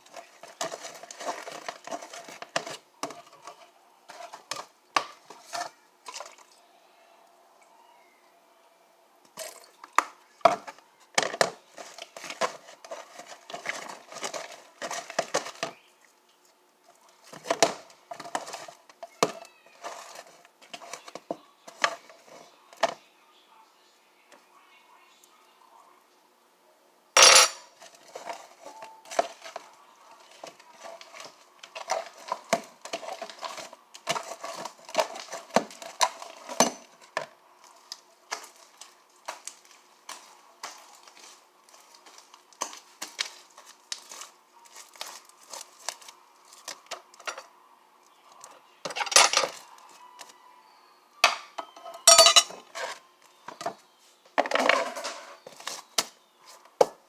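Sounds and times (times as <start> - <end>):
containers being handled: 0.0 - 6.6, 9.3 - 15.9, 16.9 - 23.0, 27.2 - 47.4, 51.2 - 57.0
utensil clinking against bowl: 27.2 - 27.7, 51.3 - 52.6.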